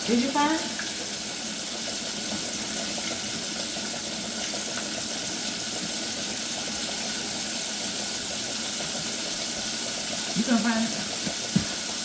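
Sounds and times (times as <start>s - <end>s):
food sizzling in hot grease: 0.0s - 12.0s.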